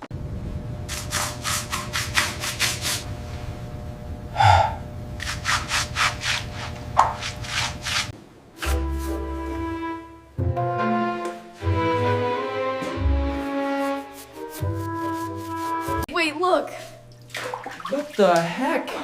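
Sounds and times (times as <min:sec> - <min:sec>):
steady low hum: 0:00.0 - 0:09.0
rhythmic scraping strokes: 0:13.2 - 0:16.1.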